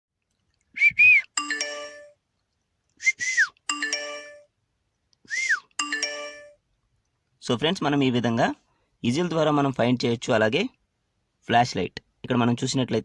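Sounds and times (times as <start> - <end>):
person whistling short notes: 0.8 - 1.4, 3.0 - 3.7, 5.3 - 5.8
phone multi-tone chime: 1.4 - 2.2, 3.7 - 4.5, 5.8 - 6.6.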